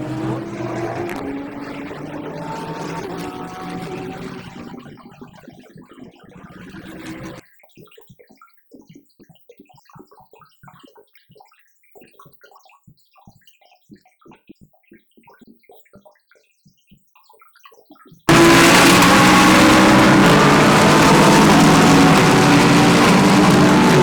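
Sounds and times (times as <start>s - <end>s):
race car engines: 0.0s - 4.9s, 6.5s - 7.4s, 18.3s - 24.0s.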